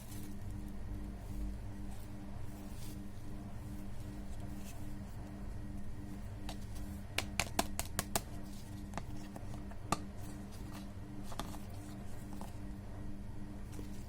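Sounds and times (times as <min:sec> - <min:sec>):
low pulsing hum: 0:00.0 - 0:14.0
plastic packaging clicking: 0:07.2 - 0:08.3.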